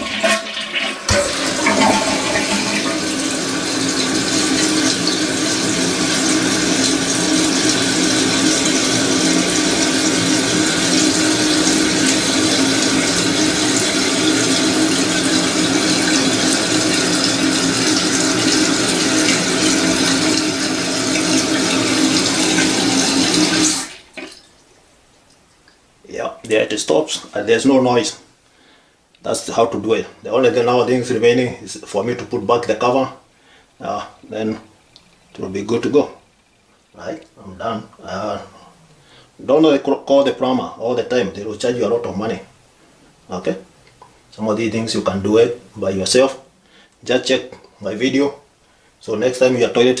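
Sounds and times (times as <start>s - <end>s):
toilet flushing: 0.0s - 24.6s
toilet tank refilling: 0.0s - 24.8s.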